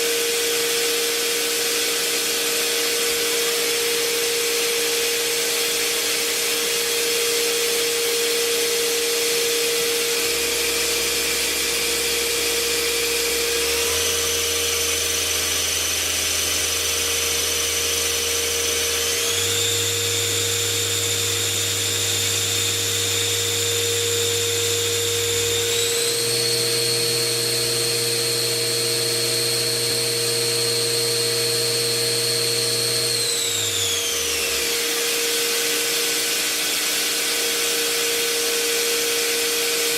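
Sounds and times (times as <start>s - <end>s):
lathe spindle whine: 0.0s - 39.9s
machine hum: 9.9s - 35.2s.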